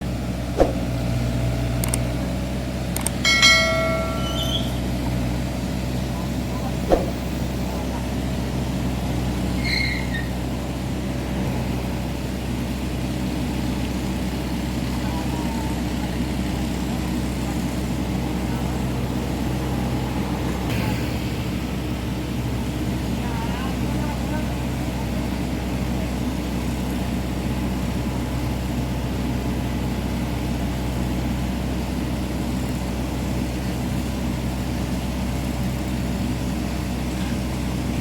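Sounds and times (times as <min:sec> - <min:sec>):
diesel engine droning: 0:00.0 - 0:38.0
excavator running: 0:00.0 - 0:38.0
sharp metallic clang: 0:03.2 - 0:05.1.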